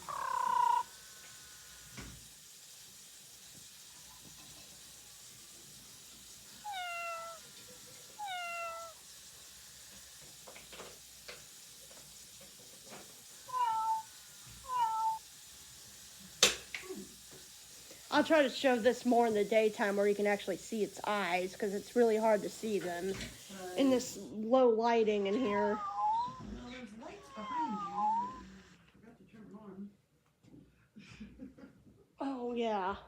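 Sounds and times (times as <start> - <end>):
robot cat toy meowing: 0.0 - 0.9, 6.6 - 7.4, 8.2 - 9.0, 13.5 - 15.2, 25.3 - 28.6.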